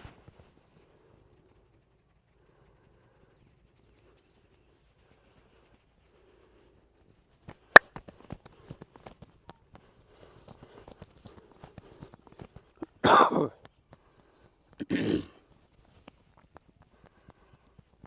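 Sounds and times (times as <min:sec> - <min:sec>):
faint hand rubbing: 0:00.0 - 0:07.2.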